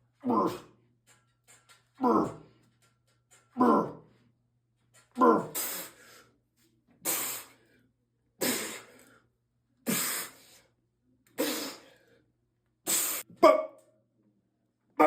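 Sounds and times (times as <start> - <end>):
person grunting: 0.2 - 0.7, 2.0 - 2.5, 3.6 - 4.0, 5.2 - 5.8
person exhaling forcefully: 9.9 - 10.4, 11.4 - 11.9.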